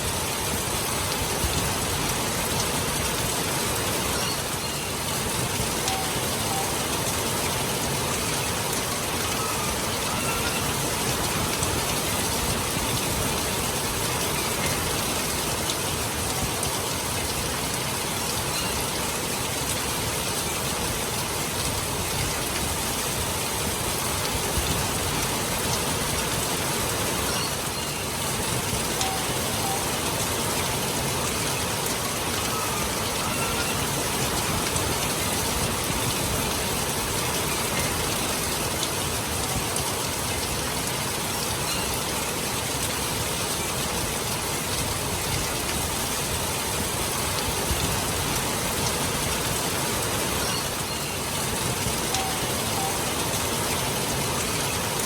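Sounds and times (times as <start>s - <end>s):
steady rain: 0.0s - 55.0s
faint whistle-like notes: 5.8s - 7.1s, 29.0s - 30.2s, 52.2s - 53.2s.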